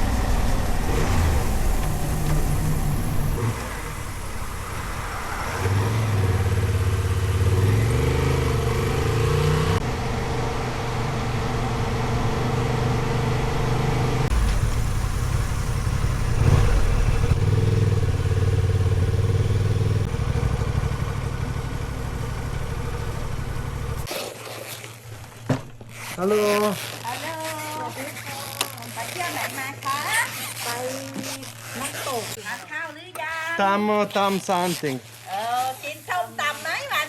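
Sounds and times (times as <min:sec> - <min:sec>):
motorcycle engine revving: 0:00.0 - 0:24.1.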